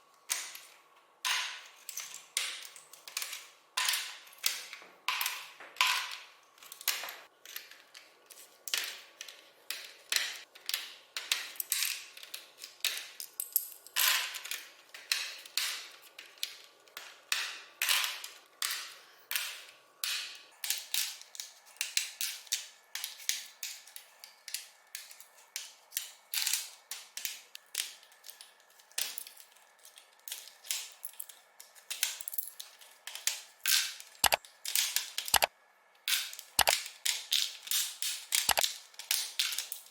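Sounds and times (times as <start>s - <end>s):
plastic keyboard parts clicking: 36.6s - 36.8s.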